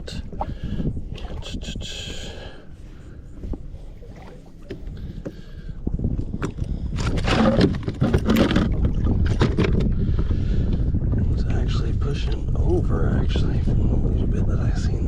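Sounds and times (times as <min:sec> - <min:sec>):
wind rumbling on microphone: 0:00.0 - 0:15.0
fish rustling and knocking: 0:03.3 - 0:05.4, 0:06.4 - 0:09.9.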